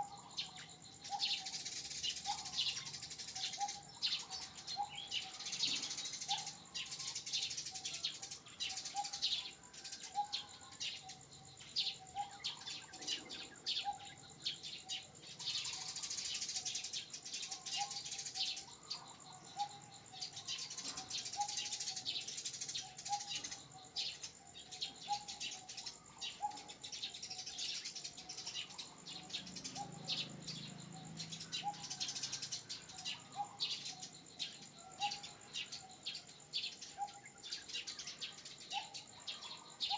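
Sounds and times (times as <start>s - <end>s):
wild birds chirping: 0.0s - 39.9s.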